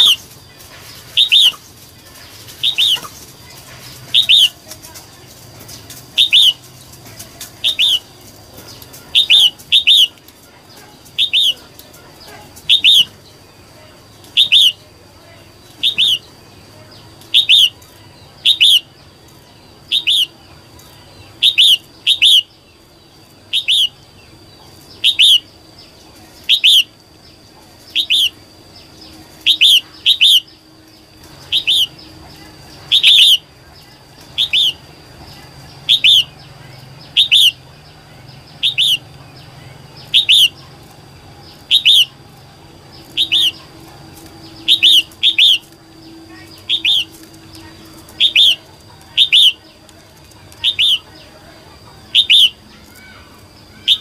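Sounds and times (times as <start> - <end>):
bulbul short sharp calls: 0.0 - 0.4, 1.0 - 1.8, 3.9 - 4.7, 6.1 - 6.7, 7.6 - 10.2, 10.8 - 13.2, 14.3 - 14.8, 17.3 - 17.8, 18.4 - 18.9, 21.4 - 22.5, 23.5 - 24.0, 25.0 - 25.5, 26.4 - 27.0, 29.4 - 30.6, 31.5 - 32.0, 32.8 - 33.4, 34.4 - 34.9, 35.8 - 36.4, 37.1 - 37.7, 38.6 - 39.1, 40.0 - 40.7, 41.6 - 42.2, 43.1 - 43.7, 44.5 - 45.8, 46.6 - 47.2, 48.1 - 49.7, 50.6 - 51.2, 52.1 - 54.0.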